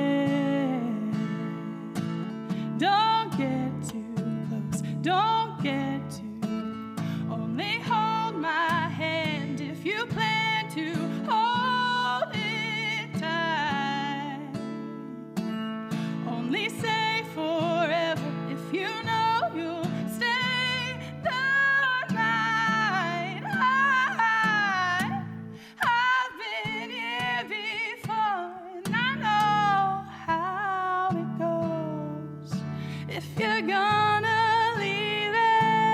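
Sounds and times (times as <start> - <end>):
woman singing with vibrato: 0.0 - 15.4, 16.2 - 35.9
guitar accompaniment: 0.0 - 35.9.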